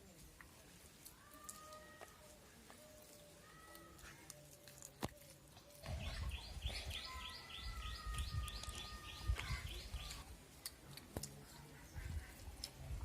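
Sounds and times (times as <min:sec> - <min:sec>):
bird chirping: 0:02.6 - 0:10.3.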